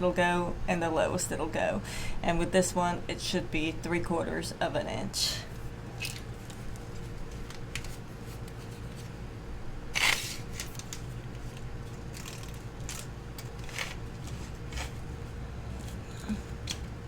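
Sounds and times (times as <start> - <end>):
tools and parts handling: 5.9 - 9.2, 9.9 - 15.1.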